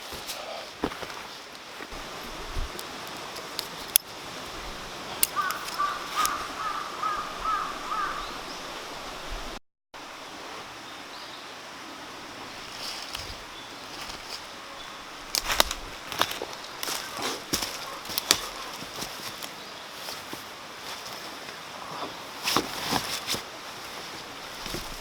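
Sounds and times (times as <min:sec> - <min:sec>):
mountain stream rushing: 0:00.0 - 0:25.0
bird calls: 0:05.1 - 0:08.9, 0:16.9 - 0:19.9.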